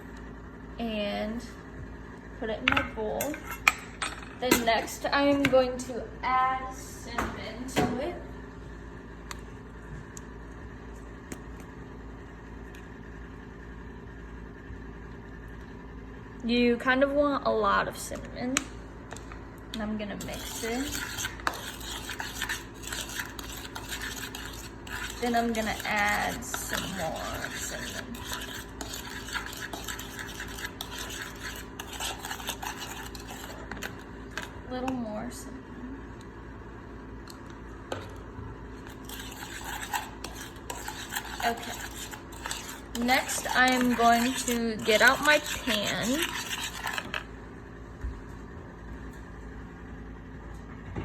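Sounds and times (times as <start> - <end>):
low mechanical hum: 0.0 - 51.0
spoon scraping mixing bowl: 2.6 - 5.9, 20.0 - 35.0, 38.8 - 47.3.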